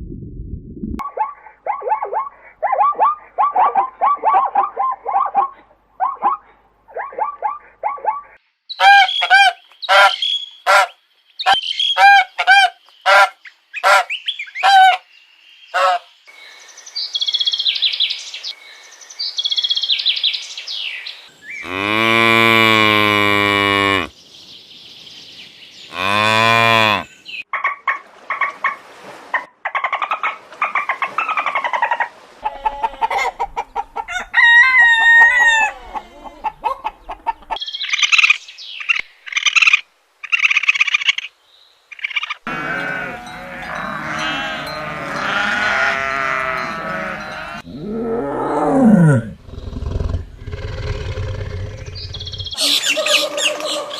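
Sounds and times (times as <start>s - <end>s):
cow mooing: 21.6s - 24.1s, 25.9s - 27.1s, 42.5s - 52.4s
chickens clucking: 29.7s - 37.6s, 52.6s - 53.9s
high chirping calls: 51.4s - 53.9s.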